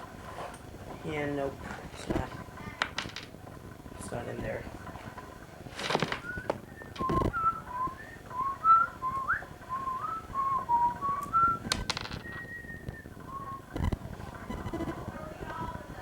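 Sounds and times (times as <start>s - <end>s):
handling knocks and clicks: 2.0s - 3.3s, 5.7s - 7.4s, 11.6s - 12.4s
person whistling a tune: 6.2s - 13.7s.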